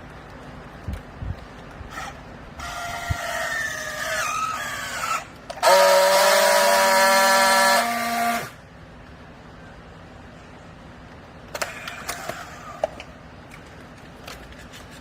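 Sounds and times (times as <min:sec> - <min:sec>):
hydraulic baler whining: 0:01.9 - 0:08.7.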